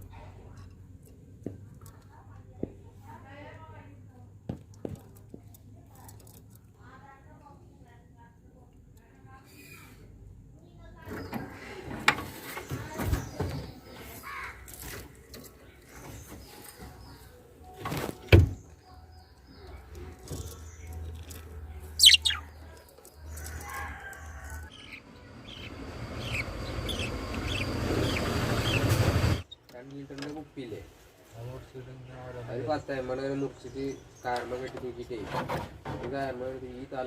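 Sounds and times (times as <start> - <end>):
lovebirds chirping: 15.8 - 29.6.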